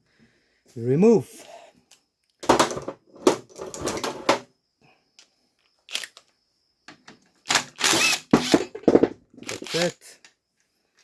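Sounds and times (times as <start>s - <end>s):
metal parts clicking and clattering: 2.4s - 4.4s.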